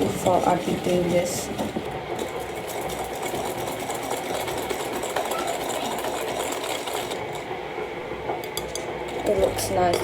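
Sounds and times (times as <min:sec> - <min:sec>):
batter being mixed in a bowl: 0:00.0 - 0:07.5.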